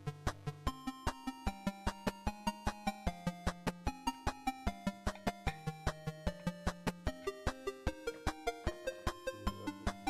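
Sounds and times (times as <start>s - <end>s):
electronic music with steady beat: 5.5s - 10.0s.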